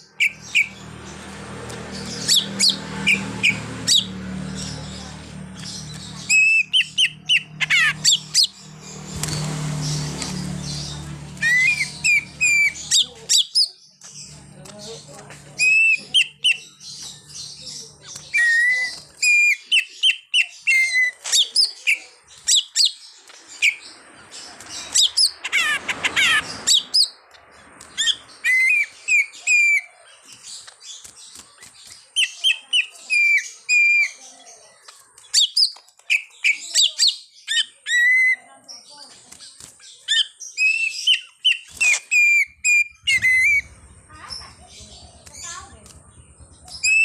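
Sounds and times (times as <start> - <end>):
bird scratchy chatter: 0.0 - 47.0
bird whistled chirps: 40.1 - 43.7, 46.7 - 47.0.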